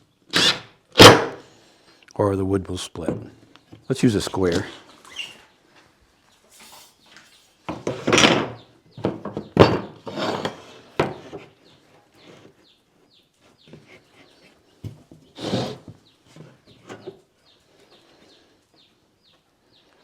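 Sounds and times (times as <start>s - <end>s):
wooden pieces knocking on workbench: 7.7s - 10.0s.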